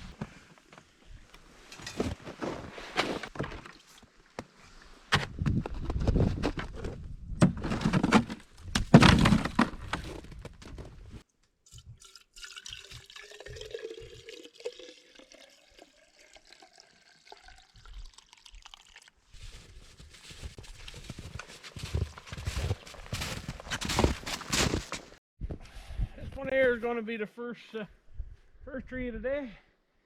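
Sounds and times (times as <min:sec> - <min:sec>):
heavy knocks and handling: 0:07.4 - 0:10.9
liquid trickling into tank: 0:11.6 - 0:19.2.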